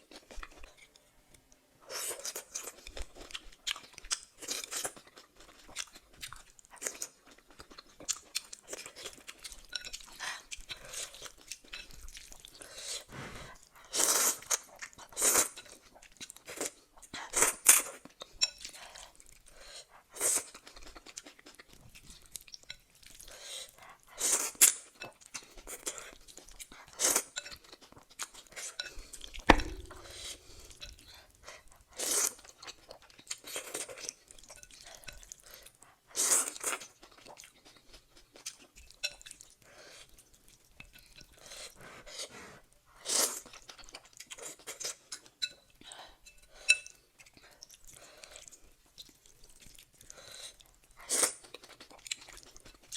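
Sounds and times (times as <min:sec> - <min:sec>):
chewing and crunching: 0:00.0 - 0:52.9
sharp knock: 0:29.5 - 0:30.0.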